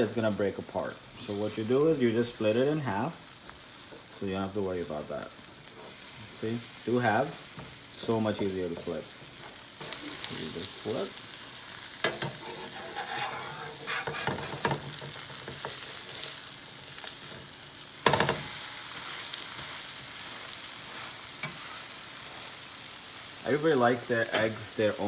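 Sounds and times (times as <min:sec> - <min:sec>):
omelette sizzling in a pan: 0:00.0 - 0:25.0
spatula scraping a pan: 0:12.0 - 0:22.6.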